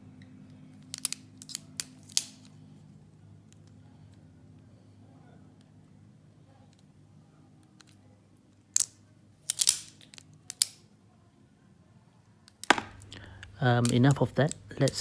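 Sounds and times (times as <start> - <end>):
multitool metallic clicks: 9.5 - 10.8.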